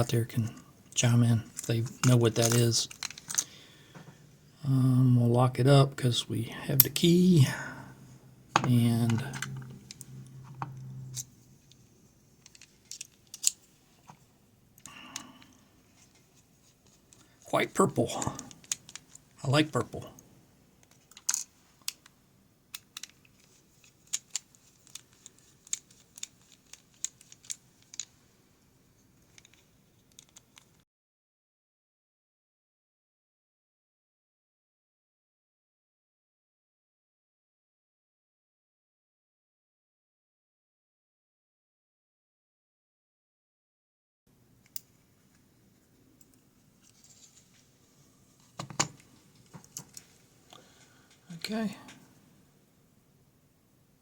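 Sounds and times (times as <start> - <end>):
lock parts clicking and tapping: 1.5 - 3.5, 12.4 - 13.6, 18.1 - 19.4, 20.8 - 22.1, 22.7 - 28.2, 29.1 - 30.8, 48.4 - 50.1
metal clicks of lock parts: 12.4 - 13.6, 20.8 - 22.1.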